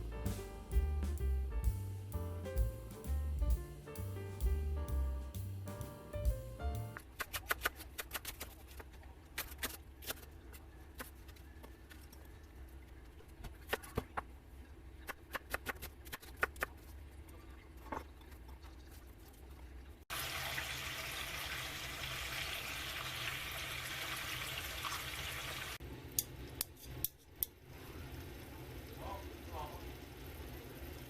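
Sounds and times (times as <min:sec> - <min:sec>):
water running from a tap: 0:20.1 - 0:25.8.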